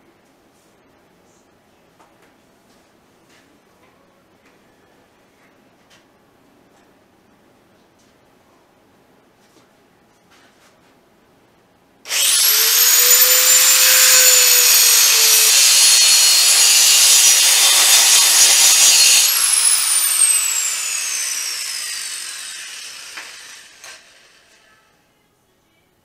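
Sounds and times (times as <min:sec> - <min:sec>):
grinder cutting metal: 0:12.1 - 0:24.6.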